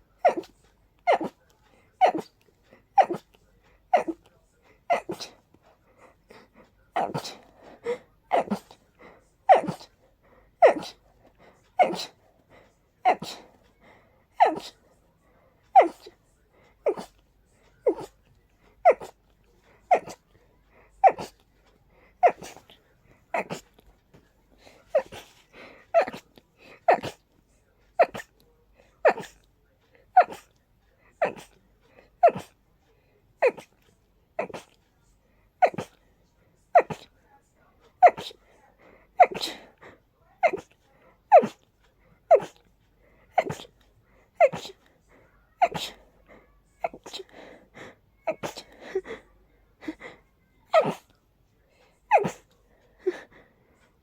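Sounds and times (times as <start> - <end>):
person sneezing: 0.2 - 0.5, 1.1 - 1.4, 3.0 - 3.2, 4.9 - 5.3, 7.0 - 8.8, 9.5 - 9.9, 10.6 - 11.0, 11.8 - 12.2, 13.0 - 13.5, 14.4 - 14.8, 15.8 - 16.1, 16.8 - 17.2, 17.8 - 18.2, 18.8 - 19.2, 19.9 - 20.2, 21.0 - 21.4, 22.2 - 23.7, 24.7 - 26.2, 28.0 - 28.3, 29.0 - 29.4, 32.2 - 32.6, 34.4 - 34.7, 35.6 - 36.0, 36.8 - 37.1, 38.0 - 38.5, 39.2 - 39.8, 40.4 - 40.7, 41.3 - 41.6, 42.3 - 42.6, 43.3 - 43.7, 44.4 - 44.8, 45.6 - 46.1, 48.3 - 48.9, 50.7 - 51.1, 52.1 - 52.5.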